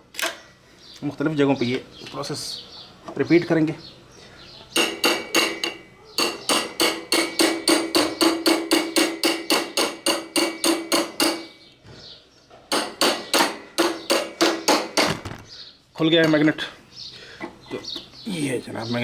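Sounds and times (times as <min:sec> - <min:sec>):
screwdriver hammered against metal: 0:04.8 - 0:11.6, 0:12.7 - 0:15.2.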